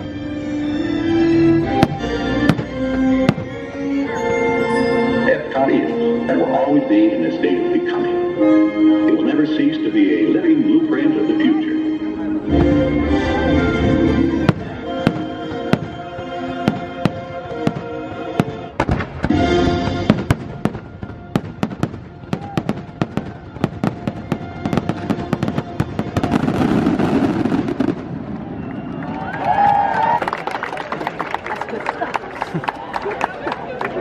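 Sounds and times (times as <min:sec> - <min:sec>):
music with held chords: 0:00.0 - 0:22.0
fireworks bangs and crackling: 0:01.8 - 0:03.6, 0:14.4 - 0:29.0.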